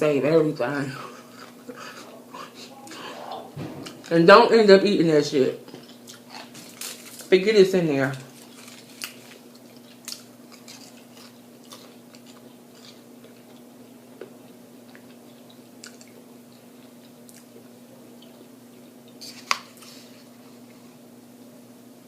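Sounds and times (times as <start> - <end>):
person chewing food with smacks: 5.7 - 7.0, 8.4 - 20.8.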